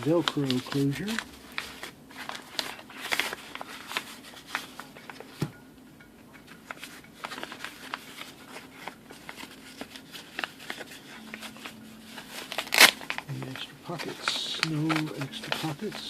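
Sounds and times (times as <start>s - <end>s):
velcro sheath rustling: 7.2s - 16.0s.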